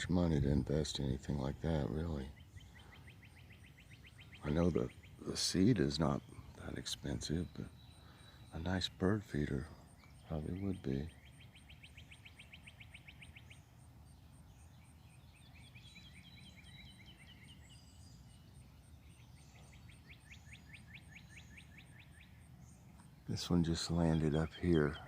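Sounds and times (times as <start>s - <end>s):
songbirds singing: 0.0s - 25.0s.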